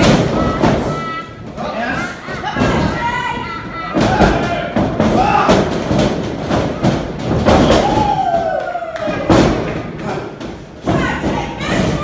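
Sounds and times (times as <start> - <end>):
crowd noise: 0.0 - 12.0
heavy thuds of bodies landing: 0.0 - 12.0.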